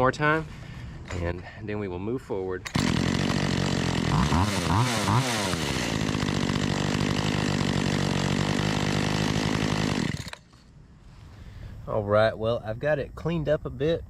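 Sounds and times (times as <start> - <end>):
chainsaw revving and idling: 2.6 - 10.5.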